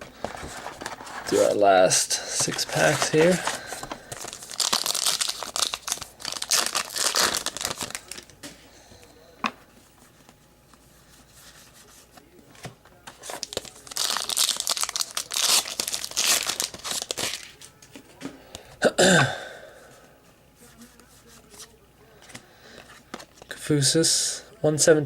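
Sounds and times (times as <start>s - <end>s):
wrappers crinkling and tearing: 0.4s - 8.4s, 13.1s - 17.7s.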